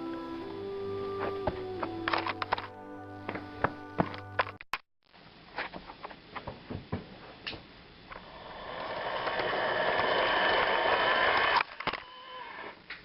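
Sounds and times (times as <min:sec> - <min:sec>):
toy train motor whirring: 0:08.2 - 0:12.7.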